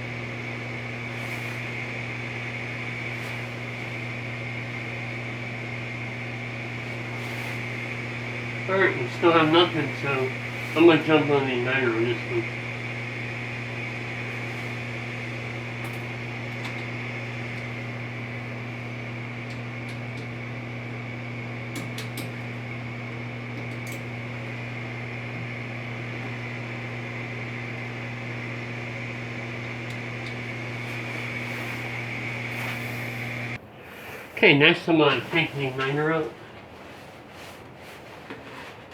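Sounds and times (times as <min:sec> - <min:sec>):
furnace inducer motor humming: 0:00.0 - 0:38.9.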